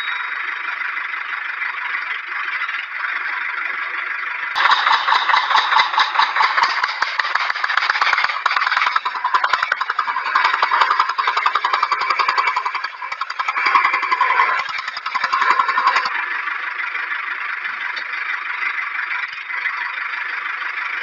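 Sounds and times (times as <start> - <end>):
small gearbox ticking: 4.6 - 16.1
toy motor whirring: 4.6 - 16.1.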